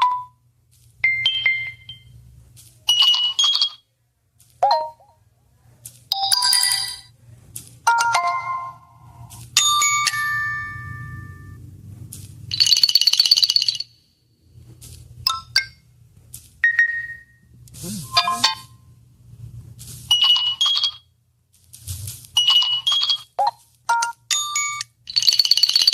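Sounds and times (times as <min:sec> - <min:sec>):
faint low hum: 0:00.0 - 0:12.8, 0:13.6 - 0:20.2.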